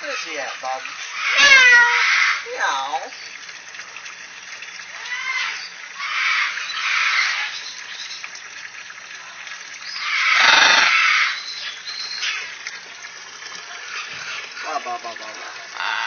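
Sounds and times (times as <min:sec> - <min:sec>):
parrot squawking: 0:01.1 - 0:02.9, 0:09.9 - 0:11.5, 0:15.8 - 0:16.0.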